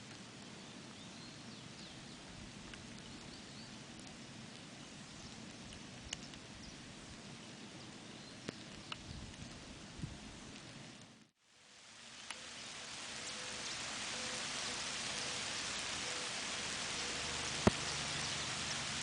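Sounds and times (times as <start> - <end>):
light rain hiss: 0.0 - 19.0
birds chirping: 13.2 - 19.0
drops ticking: 17.4 - 18.5.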